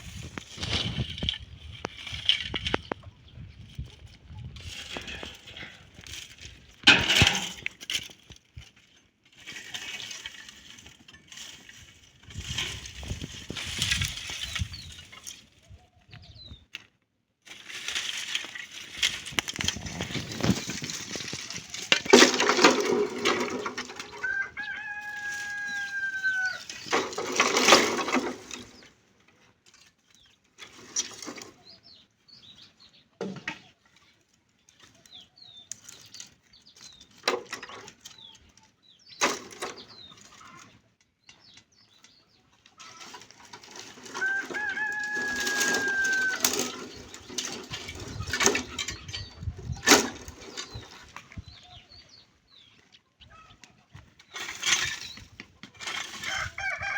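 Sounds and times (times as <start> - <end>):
rustles and knocks: 17.5 - 24.3
rooster crowing: 24.1 - 26.7, 44.1 - 46.8, 56.2 - 56.9.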